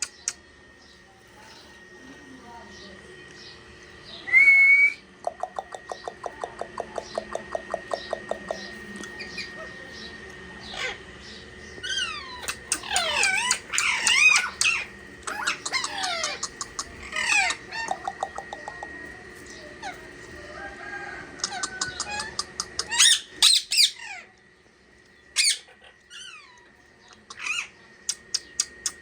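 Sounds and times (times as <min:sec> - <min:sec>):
parrots chirping: 0:03.4 - 0:24.3, 0:25.1 - 0:29.0
parrots making harsh calls: 0:10.6 - 0:11.1, 0:11.8 - 0:18.3, 0:20.8 - 0:24.3, 0:25.3 - 0:26.7, 0:27.3 - 0:27.8.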